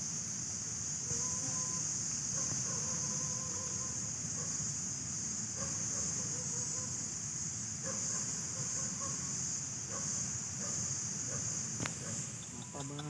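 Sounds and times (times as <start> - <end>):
high-pitched insect chorus: 0.0 - 13.0
soft animal calls: 1.1 - 4.1, 12.0 - 13.0.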